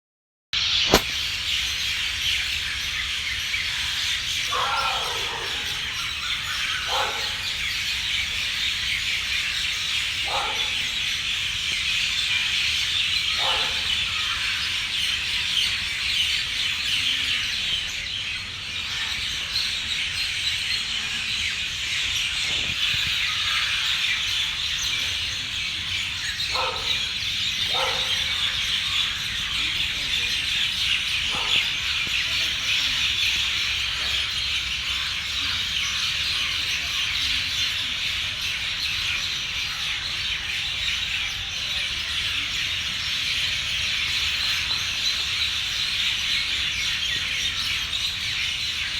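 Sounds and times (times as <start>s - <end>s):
birds downward-sliding calls: 22.2s - 39.4s.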